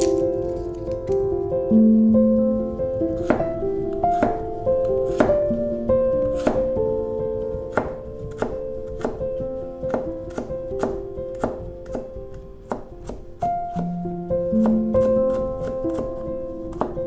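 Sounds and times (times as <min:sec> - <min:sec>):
background music with sustained notes: 0:00.0 - 0:17.0
knife chopping on cutting board: 0:03.2 - 0:05.5, 0:06.2 - 0:06.7, 0:07.6 - 0:13.8, 0:14.6 - 0:17.0.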